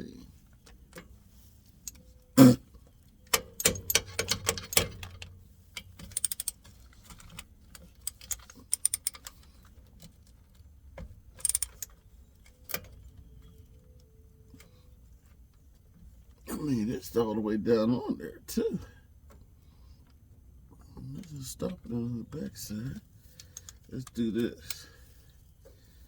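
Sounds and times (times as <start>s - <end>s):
metal clinks and knocks: 3.2s - 13.6s
ratchet clicking: 3.3s - 9.5s, 11.4s - 12.8s.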